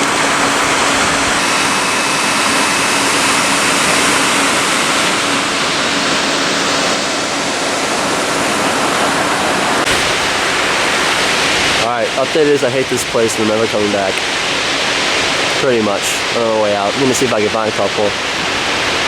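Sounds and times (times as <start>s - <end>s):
water pouring over a dam: 9.6s - 19.0s.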